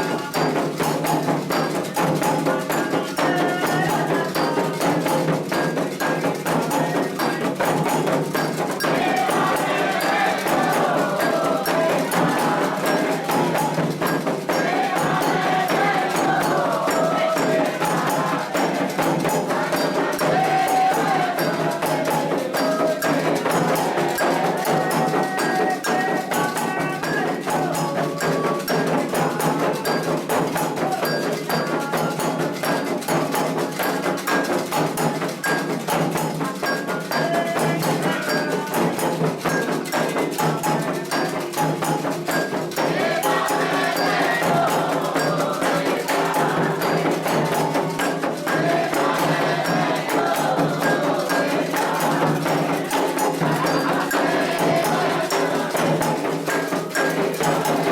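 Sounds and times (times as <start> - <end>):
hand drums: 0.0 - 57.9
voices singing a chant: 0.0 - 57.9.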